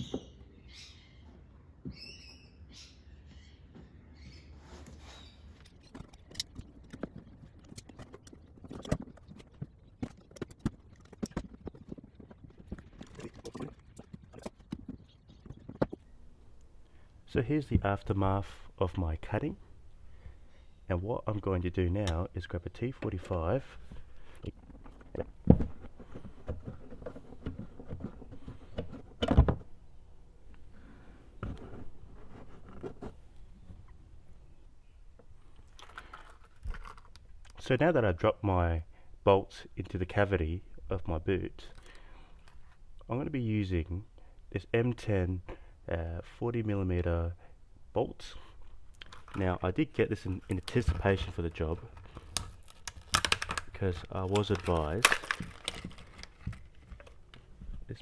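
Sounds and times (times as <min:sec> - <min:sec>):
metal hardware clattering: 0:49.0 - 0:49.6, 0:50.2 - 0:57.2
metal hand tools clicking and knocking: 0:50.4 - 0:57.2.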